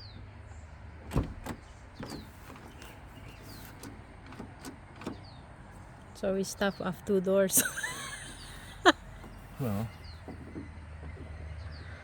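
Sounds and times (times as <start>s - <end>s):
car door latch knock: 1.1s - 2.8s
latch clicks and taps: 1.1s - 5.3s.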